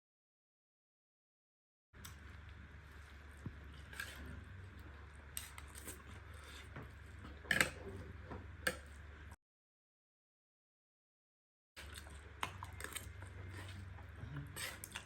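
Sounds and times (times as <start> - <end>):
low steady hum: 2.0 - 9.4, 11.8 - 15.0
spoon scraping a dish: 3.5 - 8.1, 12.4 - 15.0.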